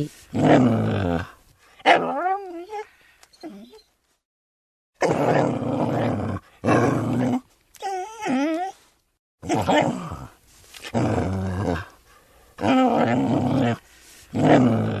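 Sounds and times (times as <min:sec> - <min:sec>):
dog whining: 0:01.8 - 0:04.0, 0:07.2 - 0:08.8.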